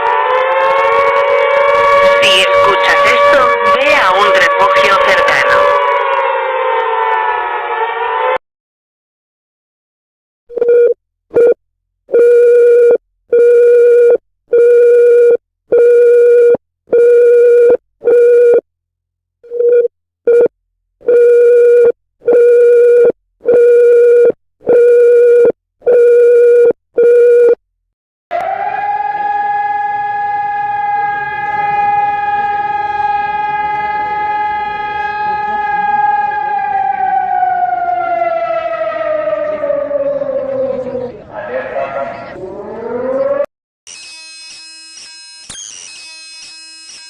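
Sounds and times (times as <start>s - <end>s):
long steady alarm tone: 0.0s - 8.4s, 28.3s - 41.0s, 42.0s - 47.0s
loud evenly spaced beeps: 43.9s - 47.0s.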